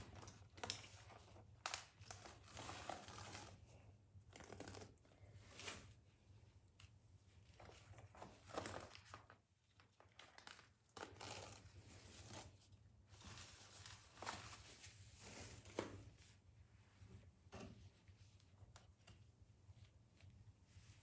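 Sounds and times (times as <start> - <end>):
packaging rustling and tearing: 8.0 - 12.4.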